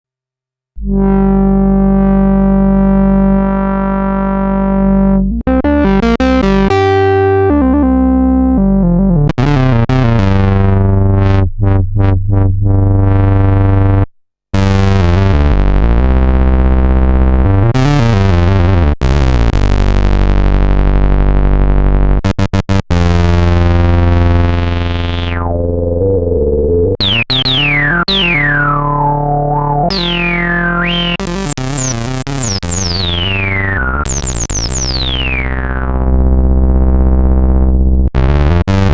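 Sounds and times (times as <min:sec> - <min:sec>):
synthesizer low notes: 0:00.8 - 0:14.0, 0:14.6 - 0:38.9
falling synthesizer pitch sweeps: 0:25.2 - 0:36.1.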